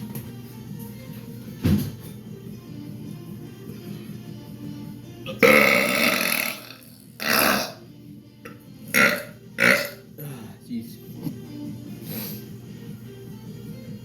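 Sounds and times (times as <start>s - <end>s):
man belching: 5.3s - 7.8s, 8.9s - 10.0s.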